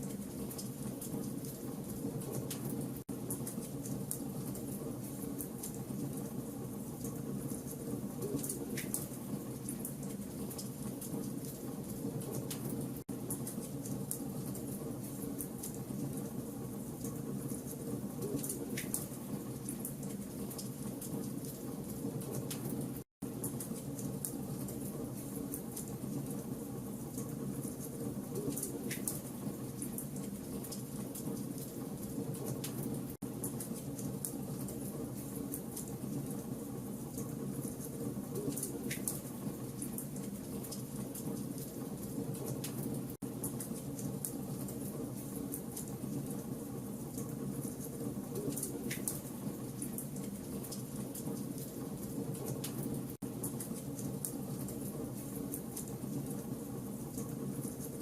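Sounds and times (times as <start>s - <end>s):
fire crackling and popping: 17.0s - 58.0s.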